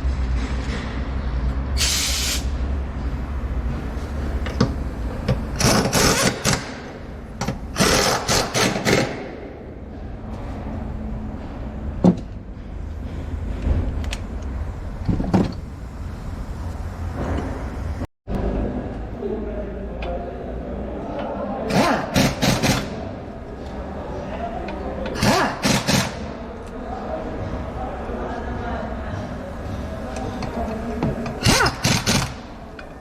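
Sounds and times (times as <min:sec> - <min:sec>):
short hissing bursts: 0:01.8 - 0:02.5
steady low rumble: 0:02.4 - 0:07.8, 0:09.4 - 0:18.9.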